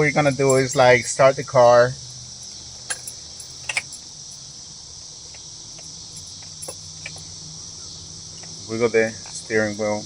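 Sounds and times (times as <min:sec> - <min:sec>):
crickets chirring: 0:00.0 - 0:10.0
low background hum: 0:00.0 - 0:10.0.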